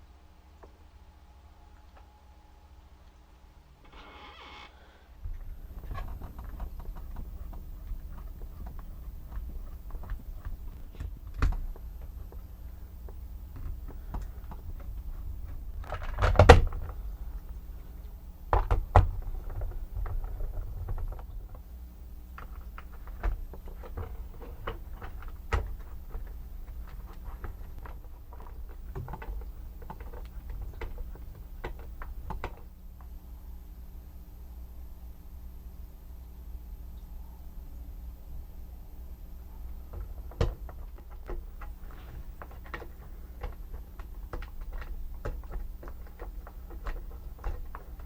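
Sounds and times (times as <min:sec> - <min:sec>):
steady low hum: 0:04.8 - 0:48.0
plastic parts clicking and knocking: 0:05.4 - 0:17.6, 0:18.5 - 0:21.6, 0:22.4 - 0:32.7, 0:39.7 - 0:48.0
plastic parts clattering: 0:05.7 - 0:17.6.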